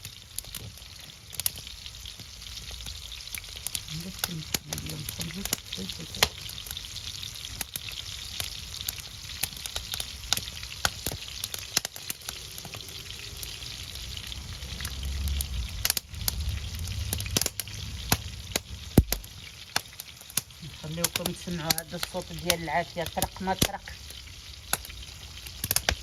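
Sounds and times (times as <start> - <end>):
firewood popping and cracking: 0.0 - 26.0
fish sizzling in oil: 0.0 - 26.0
low rumble: 14.4 - 19.4.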